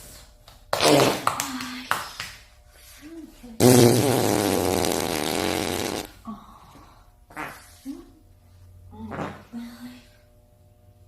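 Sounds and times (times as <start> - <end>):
long loud fart: 0.7 - 1.4, 3.6 - 6.2, 7.3 - 7.7.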